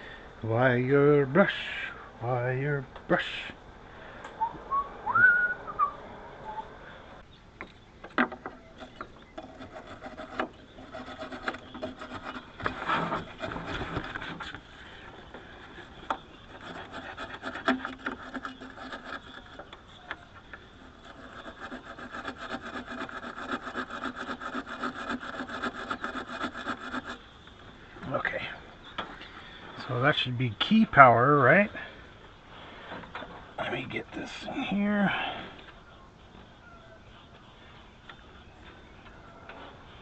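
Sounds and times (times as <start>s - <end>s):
wire brush scrubbing: 8.8s - 20.0s, 20.7s - 27.3s.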